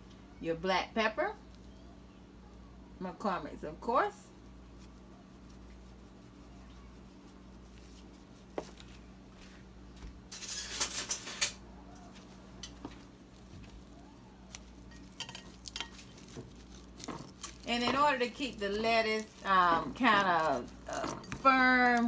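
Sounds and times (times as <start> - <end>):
dishes scraping and rattling: 10.3 - 11.6, 14.6 - 22.0.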